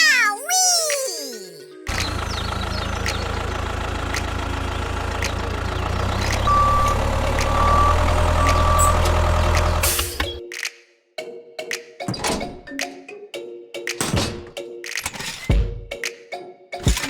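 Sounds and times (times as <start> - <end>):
heavy vehicle engine rumbling: 1.9 - 10.4
reversing beeps: 6.5 - 9.2.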